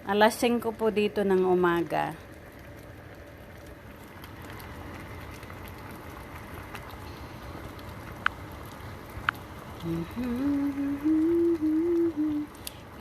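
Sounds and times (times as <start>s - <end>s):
pot simmering: 0.0s - 13.0s
person humming: 9.8s - 12.6s.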